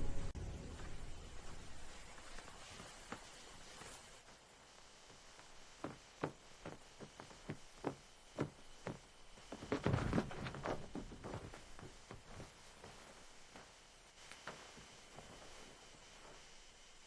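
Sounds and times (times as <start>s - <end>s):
scuffing: 5.0s - 15.8s.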